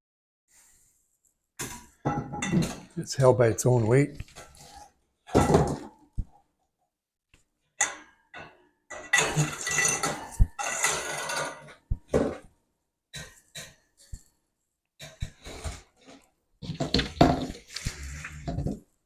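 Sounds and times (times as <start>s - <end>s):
rattling and scraping: 16.6s - 18.8s.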